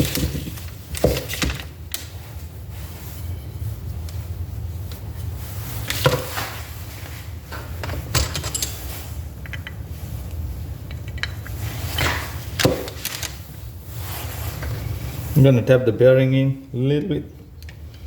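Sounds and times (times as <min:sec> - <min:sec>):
steady low hum: 0:00.0 - 0:18.0
metal tools clinking on workbench: 0:07.8 - 0:08.9.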